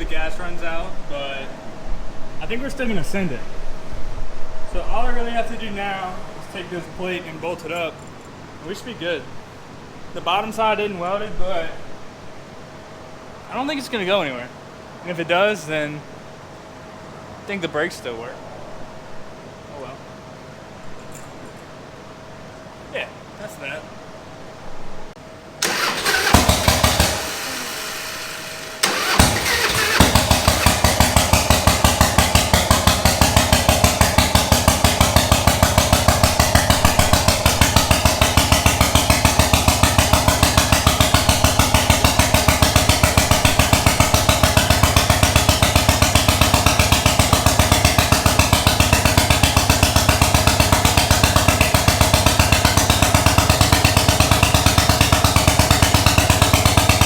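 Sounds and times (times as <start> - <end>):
engine starting and running: 25.6 - 57.0.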